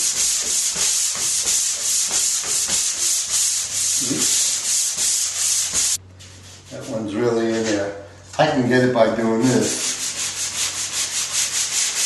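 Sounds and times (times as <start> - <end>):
sandpaper rubbing on drywall: 0.0 - 7.8, 9.4 - 12.0.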